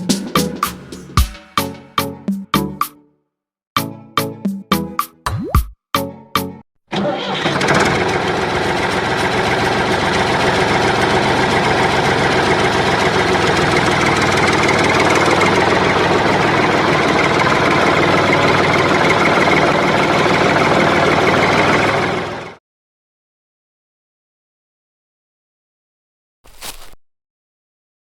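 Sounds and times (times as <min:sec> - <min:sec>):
engine chugging: 0:00.0 - 0:02.0, 0:07.0 - 0:22.6.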